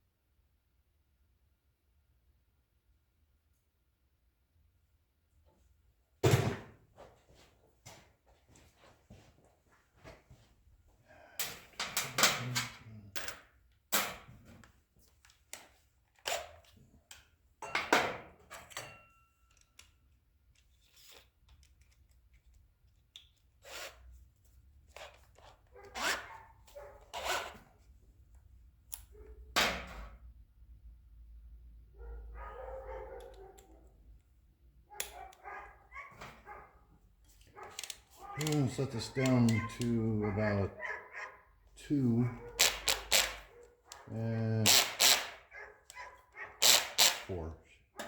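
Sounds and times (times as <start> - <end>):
hand tools clinking: 17.6 - 20.0, 37.2 - 41.0.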